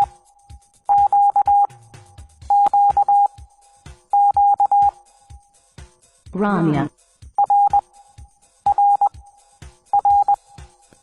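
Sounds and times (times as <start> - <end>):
morse code tone: 0.9 - 1.7, 2.5 - 3.3, 4.2 - 4.9, 6.8 - 7.8, 8.7 - 9.1, 10.0 - 10.4.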